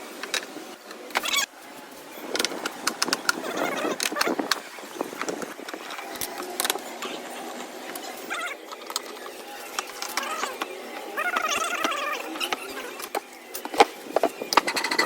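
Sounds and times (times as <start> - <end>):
hand tools and parts clattering: 11.3 - 15.0.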